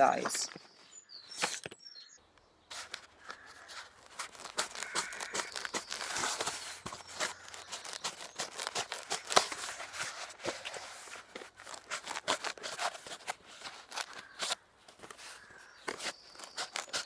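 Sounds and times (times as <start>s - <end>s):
crinkly stuffing rustling: 2.7s - 17.0s.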